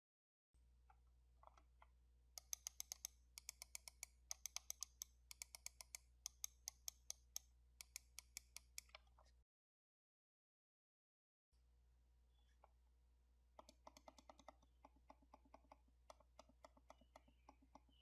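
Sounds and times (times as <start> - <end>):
mouse switch clicking: 2.4 - 9.0, 13.6 - 18.0.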